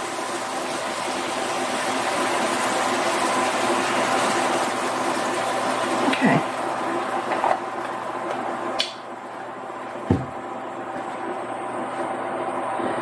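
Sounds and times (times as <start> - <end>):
food sizzling in a hot pan: 0.0 - 9.2
low thump: 10.1 - 10.3.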